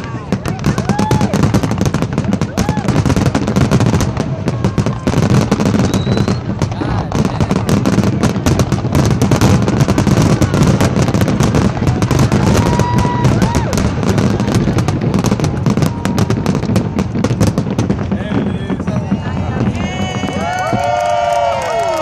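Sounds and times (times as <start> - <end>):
firework bangs and crackles: 0.0 - 22.0
firework whistles: 2.4 - 6.8, 18.3 - 22.0.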